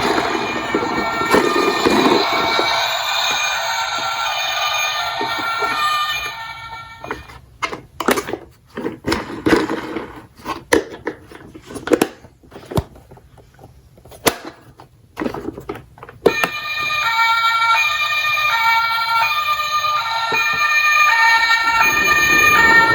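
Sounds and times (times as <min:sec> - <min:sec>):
two-tone electronic siren: 0:00.0 - 0:07.4, 0:16.3 - 0:22.9.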